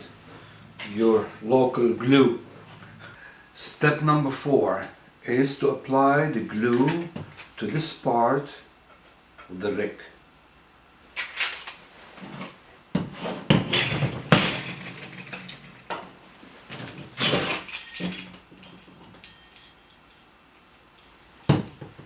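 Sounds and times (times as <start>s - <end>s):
small cymbals jingling: 17.2s - 20.4s.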